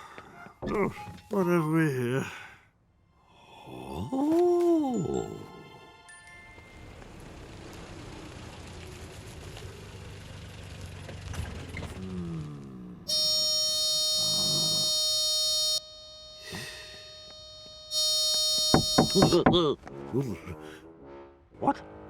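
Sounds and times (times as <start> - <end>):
harsh electronic buzzer: 13.1 - 19.6.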